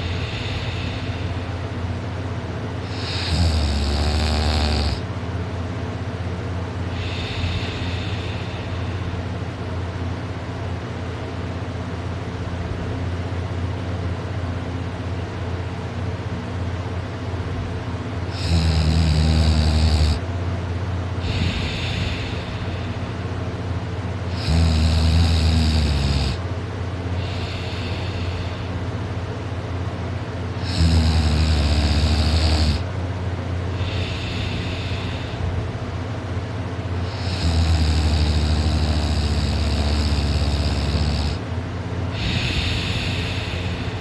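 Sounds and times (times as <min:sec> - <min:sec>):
steady low hum: 0:00.0 - 0:44.0
person snoring loudly: 0:02.8 - 0:05.0, 0:06.9 - 0:08.8, 0:18.3 - 0:20.2, 0:21.2 - 0:22.9, 0:24.3 - 0:26.4, 0:27.2 - 0:28.7, 0:30.6 - 0:32.9, 0:33.8 - 0:35.4, 0:37.0 - 0:41.4, 0:42.1 - 0:44.0.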